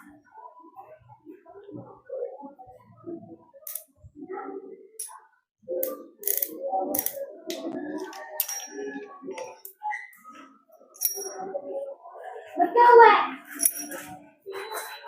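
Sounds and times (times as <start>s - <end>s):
metallic clicks of toy revolver: 5.8s - 7.2s.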